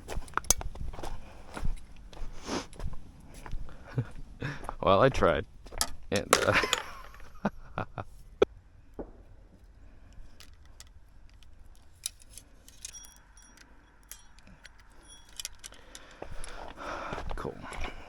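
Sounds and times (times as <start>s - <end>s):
small metal objects jingling: 5.8s - 7.2s, 10.3s - 16.8s
ringing chimes: 12.7s - 16.5s.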